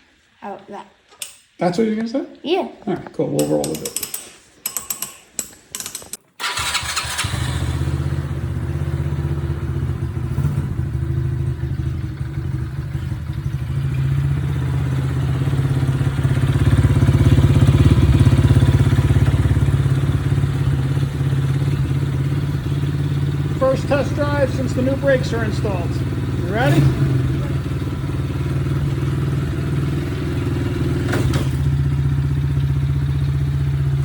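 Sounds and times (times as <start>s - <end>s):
small engine running: 6.4s - 34.0s.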